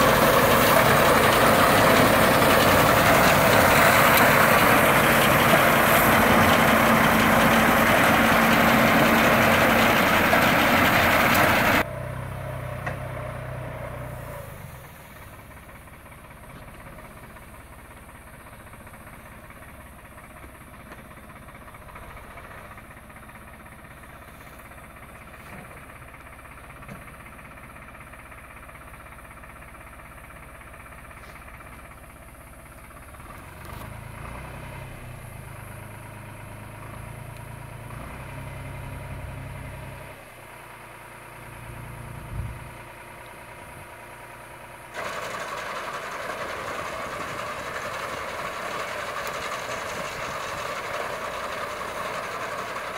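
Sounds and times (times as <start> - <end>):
loud machine clattering: 0.0 - 11.8, 44.9 - 52.9
tractor engine humming: 0.0 - 52.9.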